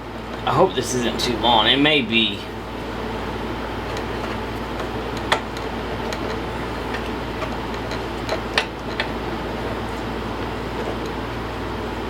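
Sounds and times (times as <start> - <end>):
steady background hum: 0.0 - 12.0.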